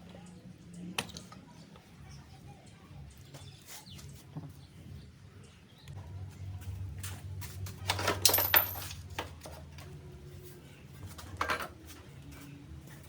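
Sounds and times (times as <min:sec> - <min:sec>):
metal tools clinking and clattering: 0:07.8 - 0:09.3.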